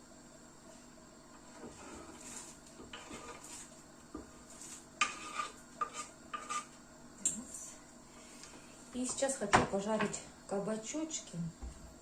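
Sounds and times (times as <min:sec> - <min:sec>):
metal utensil scraping a pot: 0:01.7 - 0:03.7, 0:04.6 - 0:06.7.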